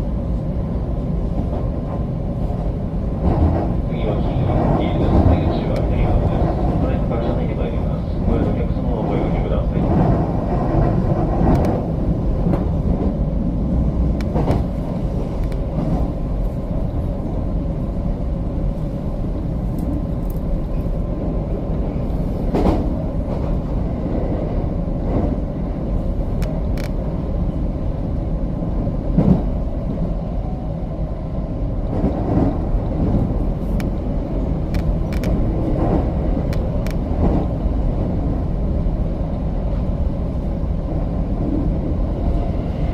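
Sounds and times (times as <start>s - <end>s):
electric train low rumble: 0.0s - 42.9s.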